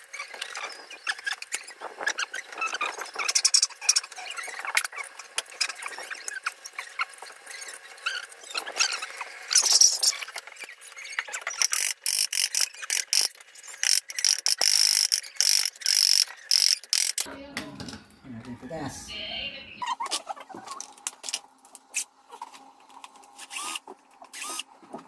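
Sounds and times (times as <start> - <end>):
fan motor squeaking and scraping: 0.0 - 17.2, 23.2 - 25.0.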